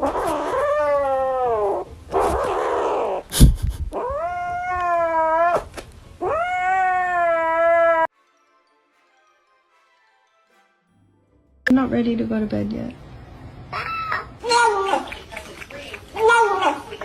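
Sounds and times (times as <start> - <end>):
cat yowling meows: 4.0 - 8.1.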